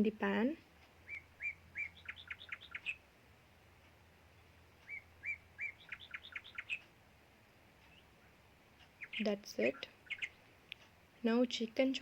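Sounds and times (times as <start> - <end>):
small songbird singing: 1.0 - 3.1, 4.3 - 6.9, 7.8 - 10.8.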